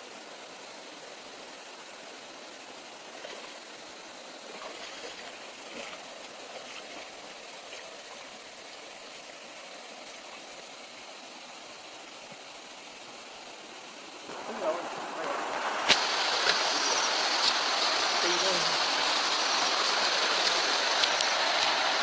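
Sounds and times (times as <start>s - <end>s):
flowing water: 0.0s - 22.0s.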